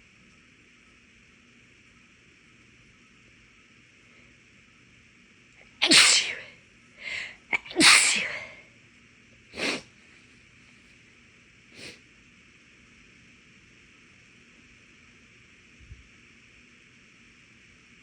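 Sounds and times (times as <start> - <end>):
woman sneezing: 5.8 - 6.5, 7.1 - 8.6
breath sounds: 6.3 - 8.6.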